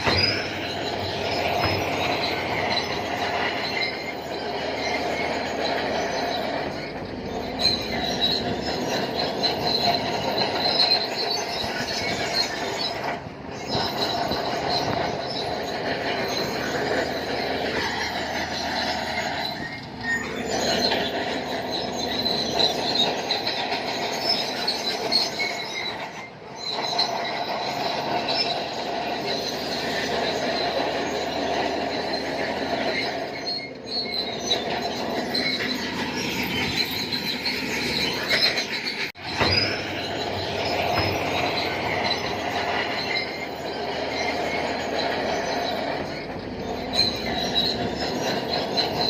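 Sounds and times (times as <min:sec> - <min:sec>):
diesel engine running: 0:00.0 - 0:49.0
steel tracks squealing and clanking: 0:00.0 - 0:49.0.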